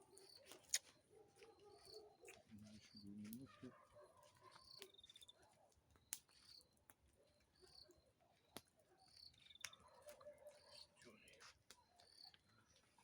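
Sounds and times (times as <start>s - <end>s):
campfire popping: 0.0s - 1.0s.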